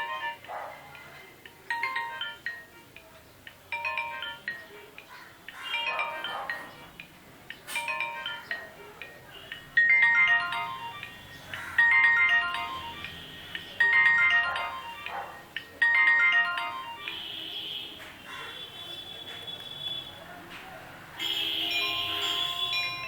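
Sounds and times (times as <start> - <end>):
electronic phone ringtone: 0.0 - 0.5, 1.7 - 2.9, 3.7 - 4.8, 5.6 - 7.0, 7.8 - 17.6, 21.2 - 23.0.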